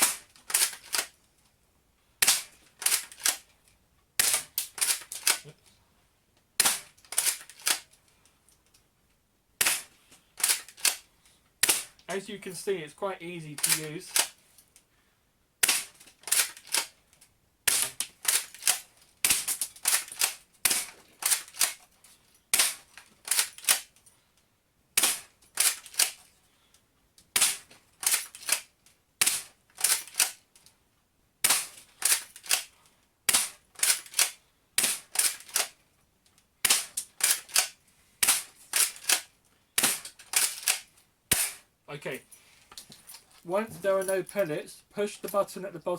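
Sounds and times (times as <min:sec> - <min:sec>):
airsoft gun cocking and firing: 0:00.0 - 0:01.2, 0:02.2 - 0:03.5, 0:04.2 - 0:05.5, 0:06.6 - 0:07.9, 0:09.6 - 0:12.1, 0:13.6 - 0:14.4, 0:15.6 - 0:17.0, 0:17.7 - 0:21.8, 0:22.5 - 0:24.0, 0:25.0 - 0:26.2, 0:27.3 - 0:30.4, 0:31.4 - 0:35.8, 0:36.6 - 0:41.6.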